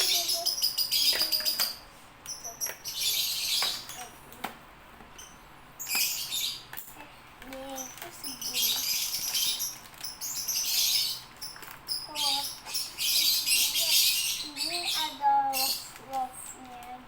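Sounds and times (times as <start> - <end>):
small clicks and taps: 3.6 - 5.3, 6.7 - 10.2.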